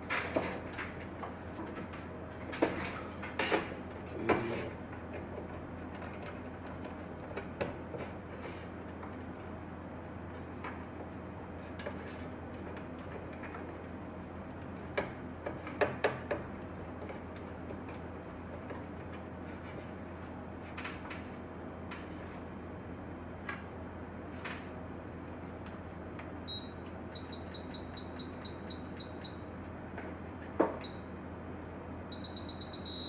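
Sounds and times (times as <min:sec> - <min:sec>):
steady low hum: 0:16.7 - 0:33.0
short high beeps: 0:32.1 - 0:33.0.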